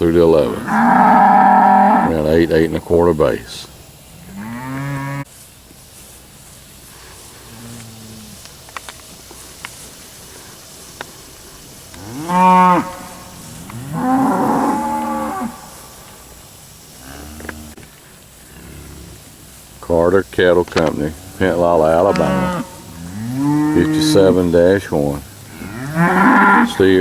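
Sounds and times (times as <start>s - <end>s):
cattle mooing: 0.4s - 2.3s, 12.0s - 15.8s, 20.9s - 24.6s, 25.5s - 27.0s.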